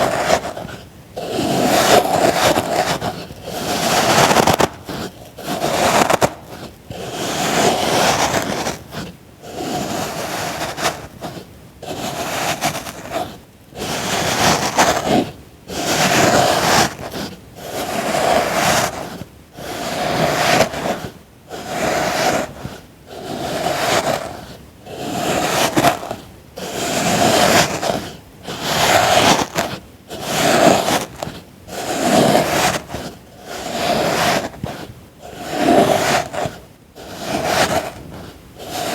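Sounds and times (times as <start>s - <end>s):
tool scraping through packed sand: 0.0s - 38.9s.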